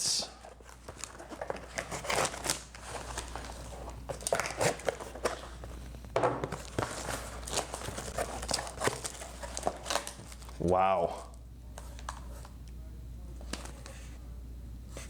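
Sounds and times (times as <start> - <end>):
plastic packaging crinkling: 0.3 - 12.5
knife cutting plastic: 0.8 - 5.6.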